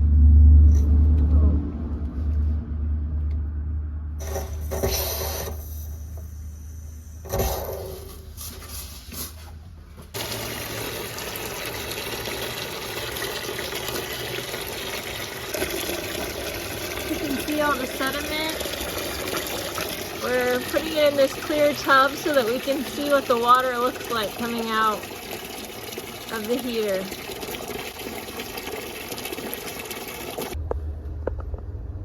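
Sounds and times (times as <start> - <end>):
loud low rumble: 0.0 - 4.2, 30.6 - 32.0
water rushing through hose: 4.2 - 8.1, 10.2 - 30.6.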